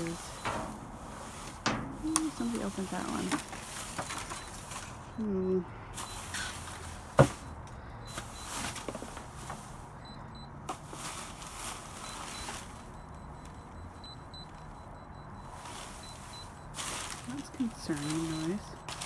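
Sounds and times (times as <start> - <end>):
trash rustling: 0.0 - 13.7, 15.4 - 19.0.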